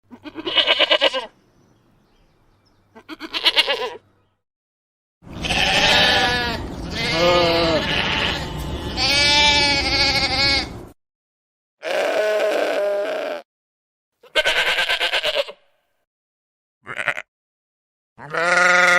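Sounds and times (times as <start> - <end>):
sheep bleating: 0.1 - 1.3, 2.9 - 4.0, 5.3 - 10.8, 11.8 - 13.5, 14.2 - 15.7, 16.8 - 17.3, 18.2 - 18.9.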